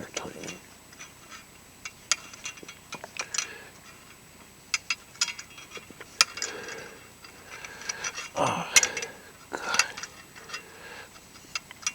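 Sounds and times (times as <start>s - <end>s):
sharp metal clicks and ticks: 1.8s - 9.1s.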